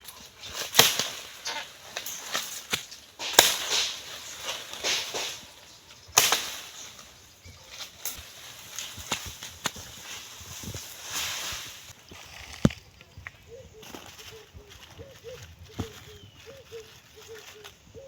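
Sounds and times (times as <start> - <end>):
rustling: 0.0 - 18.0
loud chopping blows: 0.7 - 5.6.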